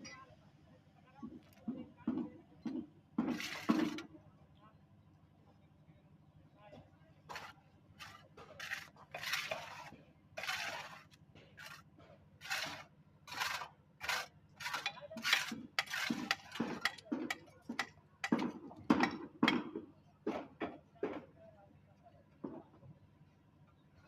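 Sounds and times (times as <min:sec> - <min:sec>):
metal tools scraping on concrete: 0:03.2 - 0:04.0, 0:07.3 - 0:11.8, 0:12.4 - 0:17.1.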